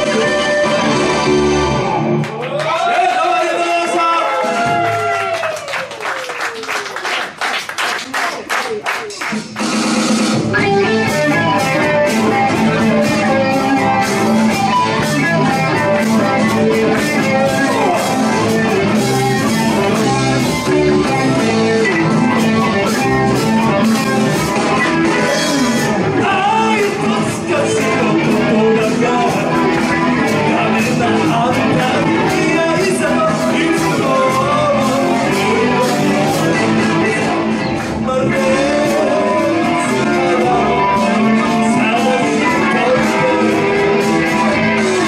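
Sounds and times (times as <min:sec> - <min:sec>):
live rock band playing: 0:00.0 - 0:02.4, 0:04.3 - 0:05.3, 0:08.7 - 0:45.0.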